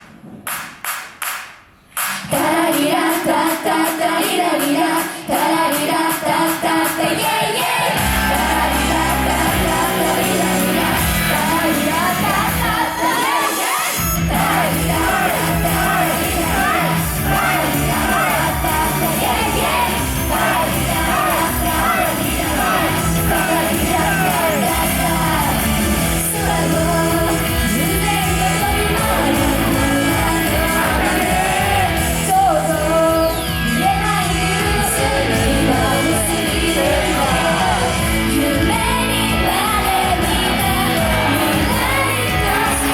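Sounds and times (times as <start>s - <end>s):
girls singing: 2.2s - 42.9s
pop-rock backing music: 7.7s - 42.9s
people shouting: 8.0s - 11.0s, 12.2s - 26.7s.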